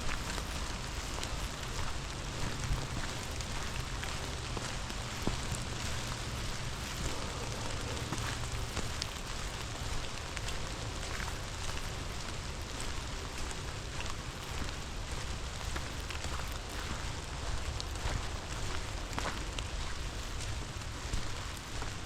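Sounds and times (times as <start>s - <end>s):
low steady rumble: 0.0s - 13.7s
rain drops ticking on plastic: 0.0s - 22.0s
steady rain falling: 0.0s - 22.0s.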